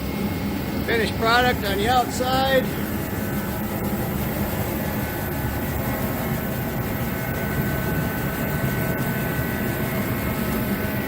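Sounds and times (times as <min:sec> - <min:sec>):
heater rushing with faint whine: 0:00.0 - 0:11.0.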